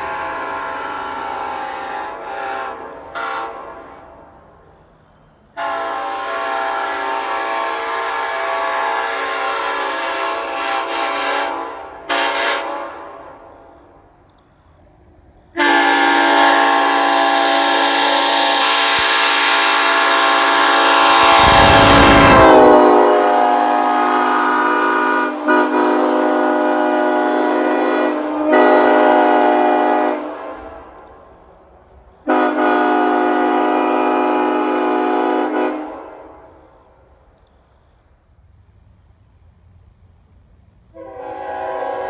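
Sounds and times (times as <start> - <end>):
locomotive air horn chord: 0.0 - 4.5, 5.6 - 14.0, 15.6 - 31.6, 32.2 - 37.1, 40.9 - 42.0
low rumble: 21.2 - 22.9.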